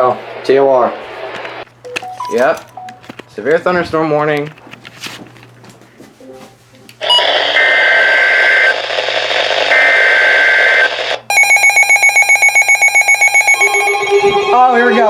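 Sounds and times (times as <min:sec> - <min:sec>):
radio hiss: 0:00.0 - 0:01.7
fast-pulsing electronic alarm tone: 0:07.0 - 0:08.8, 0:09.7 - 0:15.0
screeching digital data tones: 0:10.8 - 0:15.0.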